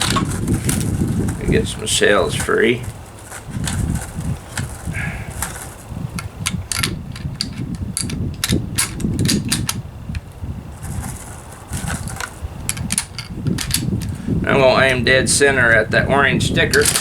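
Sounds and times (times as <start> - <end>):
cartridges clicking and clinking: 4.4 - 10.3, 11.1 - 14.2, 16.7 - 17.0.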